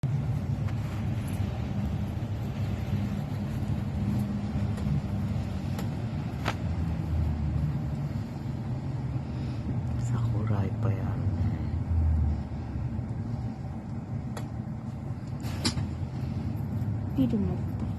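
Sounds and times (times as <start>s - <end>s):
car engine rumble and road noise: 0.0s - 17.9s.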